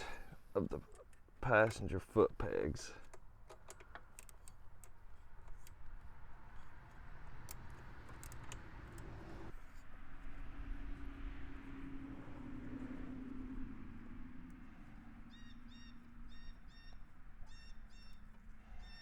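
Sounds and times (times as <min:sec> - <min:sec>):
metallic clicks of hand tools: 0:03.0 - 0:09.4.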